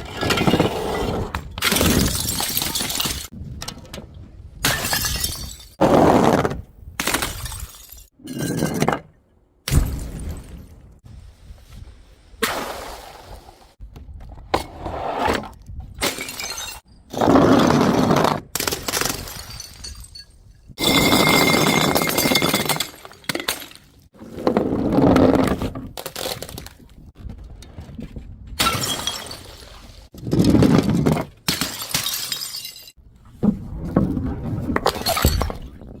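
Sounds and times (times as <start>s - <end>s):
glass bottles smashing: 1.8s - 3.3s, 4.6s - 5.8s, 7.2s - 8.9s, 16.0s - 16.9s, 19.1s - 23.8s, 28.6s - 29.6s, 31.5s - 33.0s.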